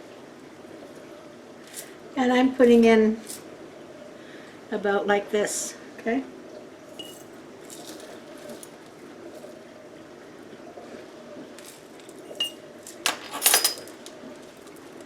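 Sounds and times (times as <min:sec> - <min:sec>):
glass jar and utensils clinking: 0:07.0 - 0:08.7, 0:12.3 - 0:14.2.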